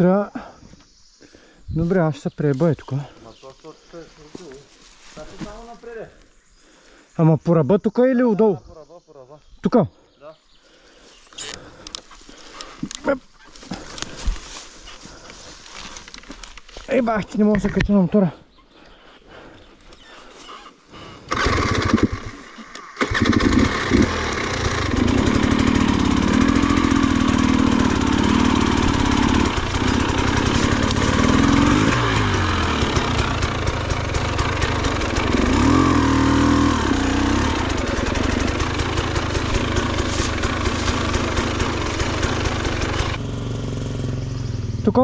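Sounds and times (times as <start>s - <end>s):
dirt bike engine starting: 11.3s - 12.9s, 13.5s - 15.9s, 20.5s - 45.0s
dirt bike engine revving: 21.3s - 45.0s.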